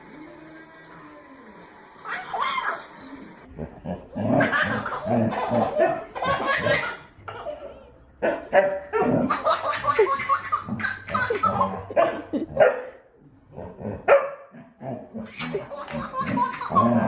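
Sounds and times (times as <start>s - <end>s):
people laughing: 9.3s - 12.6s, 15.3s - 17.0s
dog barking: 12.0s - 13.0s, 14.1s - 14.6s.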